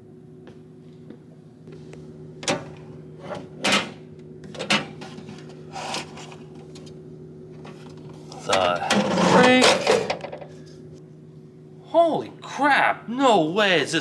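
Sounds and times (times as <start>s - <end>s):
steady low hum: 0.0s - 14.0s
drawer clunks and scrapes: 8.5s - 10.4s.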